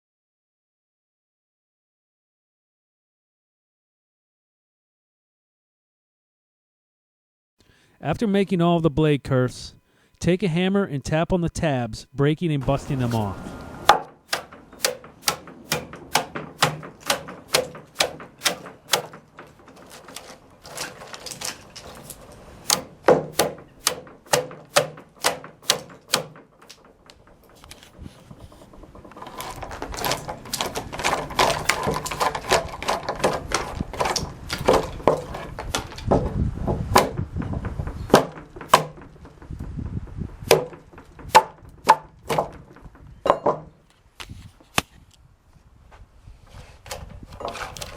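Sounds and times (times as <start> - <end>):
hammer knocking on wood: 13.8 - 19.6, 22.7 - 26.8, 36.1 - 43.7.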